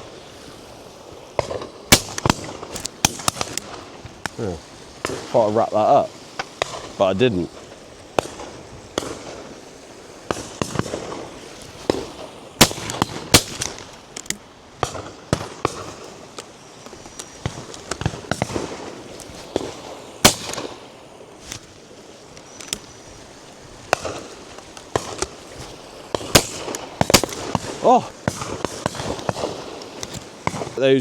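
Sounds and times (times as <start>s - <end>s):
shotgun shots: 1.4s - 4.4s, 6.4s - 16.2s, 17.3s - 21.7s, 23.8s - 30.8s.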